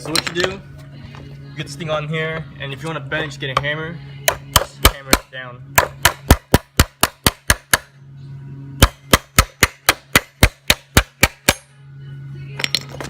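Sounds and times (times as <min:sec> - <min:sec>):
steady low hum: 0:00.0 - 0:13.0
hammer striking steel bracket: 0:08.8 - 0:11.7.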